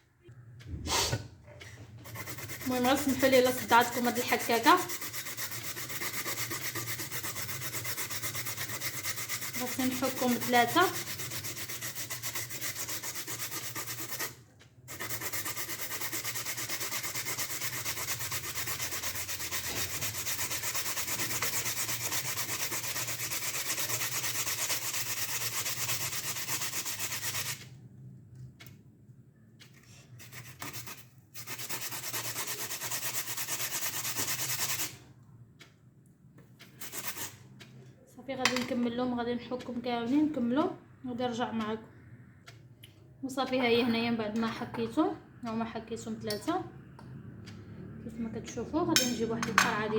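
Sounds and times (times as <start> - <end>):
food grating on grater: 2.0 - 27.7, 29.8 - 35.0, 36.6 - 37.4.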